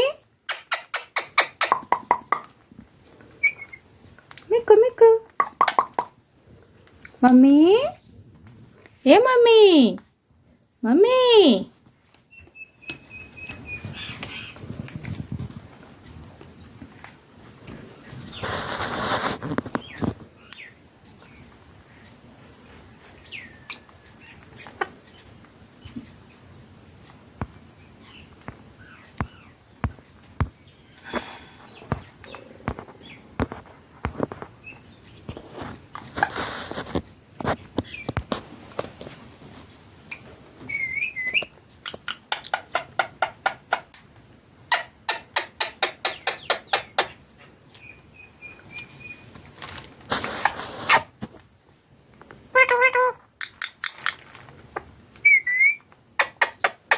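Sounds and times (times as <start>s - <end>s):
parrot chirping: 0.5s - 2.5s, 3.4s - 3.9s, 12.3s - 14.6s, 40.1s - 43.8s, 47.8s - 49.3s, 55.2s - 56.9s
sharp taps: 0.5s - 2.6s
soft parrot chirps: 3.4s - 3.9s, 40.1s - 41.6s, 55.2s - 56.9s
parrot whistle: 55.2s - 55.8s.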